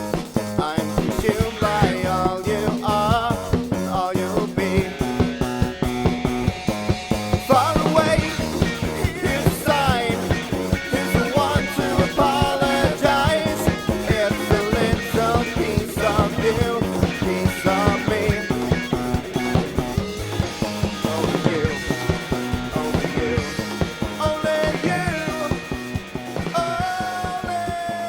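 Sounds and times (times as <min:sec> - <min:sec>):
drum beat: 0:00.0 - 0:28.0
electric guitars: 0:00.0 - 0:28.0
person singing: 0:00.7 - 0:03.4, 0:07.4 - 0:18.7, 0:21.0 - 0:25.7.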